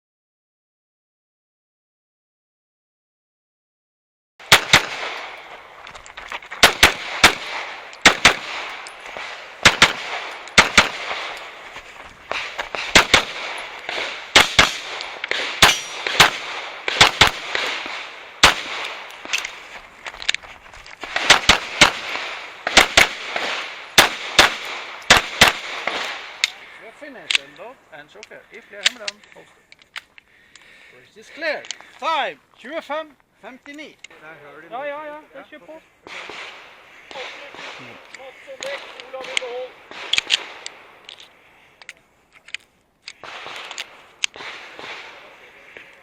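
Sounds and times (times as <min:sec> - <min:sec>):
pistol shots: 0:04.4 - 0:19.7, 0:21.0 - 0:27.5, 0:36.1 - 0:41.0, 0:43.1 - 0:46.0.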